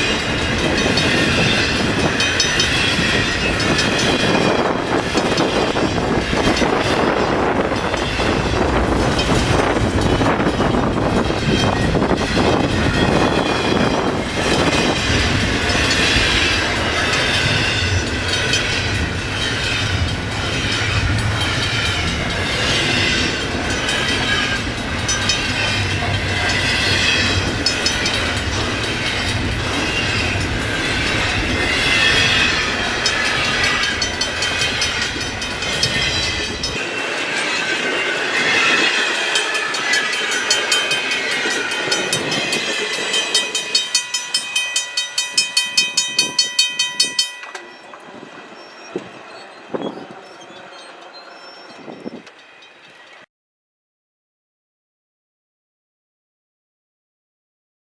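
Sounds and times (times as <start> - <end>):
wheels clacking over rails: 0.0 - 51.4
freight train rumbling past: 0.0 - 53.2
high-pitched wheel squeal: 47.6 - 53.2.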